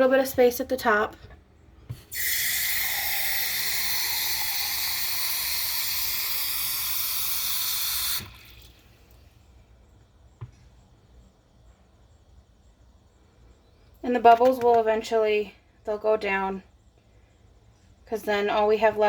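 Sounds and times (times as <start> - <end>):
water running from a tap into a bottle: 2.0 - 8.9.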